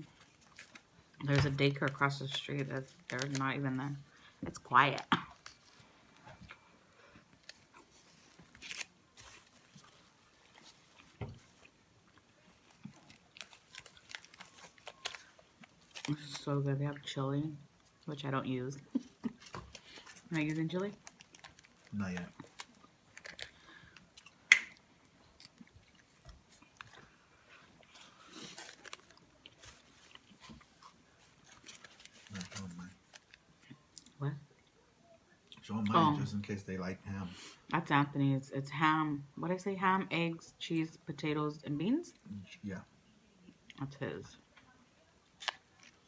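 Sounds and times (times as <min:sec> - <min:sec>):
food crunching: 0:05.0 - 0:16.6, 0:18.9 - 0:34.8, 0:45.2 - 0:46.0
person chewing food: 0:05.2 - 0:16.1, 0:21.0 - 0:32.4.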